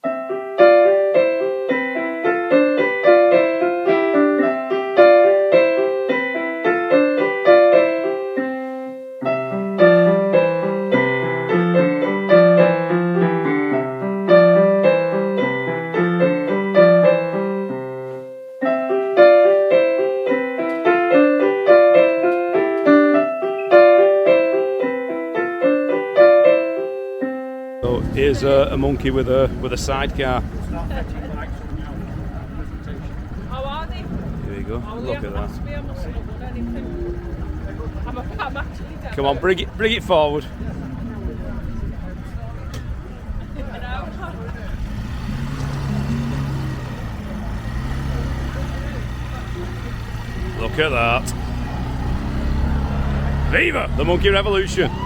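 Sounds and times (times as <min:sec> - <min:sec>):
electric piano runs: 0:00.0 - 0:55.0
bass line: 0:27.8 - 0:42.6, 0:45.4 - 0:55.0.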